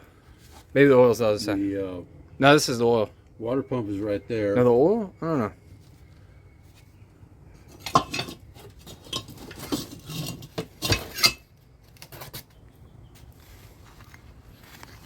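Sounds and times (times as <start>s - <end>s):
metal tools clinking: 7.7s - 11.5s.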